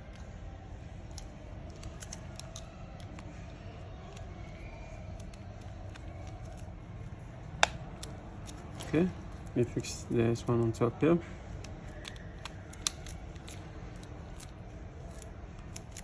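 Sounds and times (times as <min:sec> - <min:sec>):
low background hum: 0:00.0 - 0:16.0
small clicks and taps of phone parts: 0:07.6 - 0:09.0.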